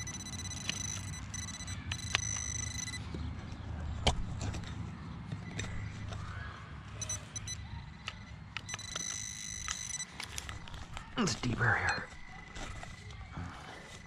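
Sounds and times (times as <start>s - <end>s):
metal detector high tone: 0.0s - 3.0s, 7.0s - 7.7s, 8.6s - 10.4s, 11.2s - 12.2s.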